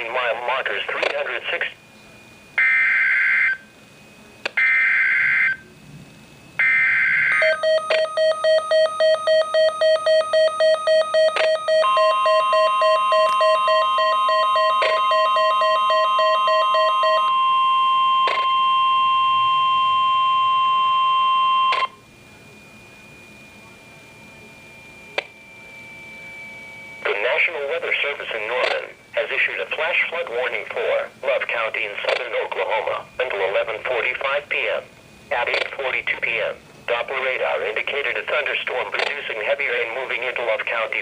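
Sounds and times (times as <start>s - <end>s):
steady warning tone: 0.0s - 41.0s
pulsing buzzy beep: 6.6s - 27.6s.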